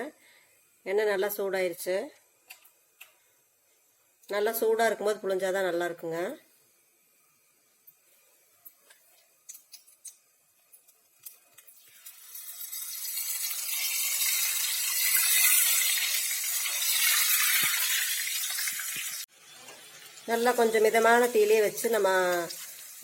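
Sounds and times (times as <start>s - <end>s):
dough sizzling in hot oil: 2.4s - 23.0s.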